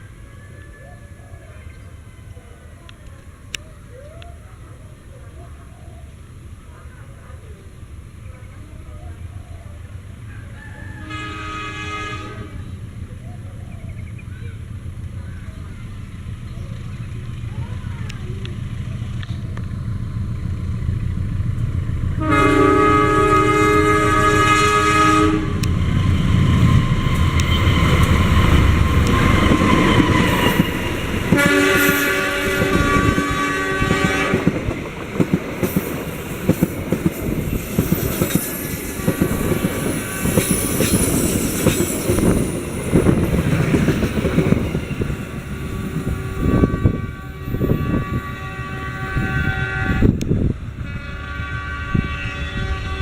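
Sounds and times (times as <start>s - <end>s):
locomotive rumbling past: 0.0s - 53.0s
locomotive horn blast: 10.9s - 12.8s, 22.2s - 25.8s, 28.9s - 34.6s, 45.6s - 53.0s
wheels clacking over rail joints: 25.6s - 46.3s.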